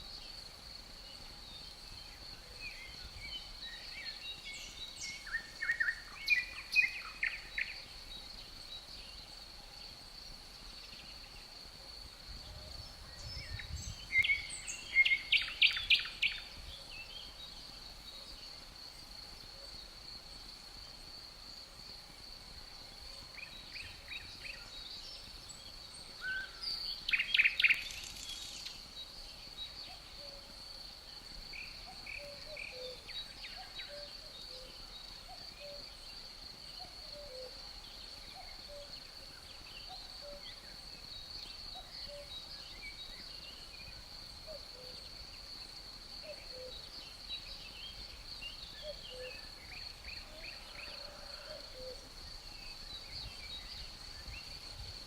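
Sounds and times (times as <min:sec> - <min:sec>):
crickets chirring: 0:00.0 - 0:55.0
birds calling and singing: 0:12.5 - 0:17.6, 0:23.4 - 0:30.3
faint cuckoo calls: 0:31.6 - 0:36.0, 0:36.8 - 0:37.6, 0:38.2 - 0:40.7, 0:44.4 - 0:45.2, 0:46.2 - 0:47.0, 0:48.6 - 0:52.1.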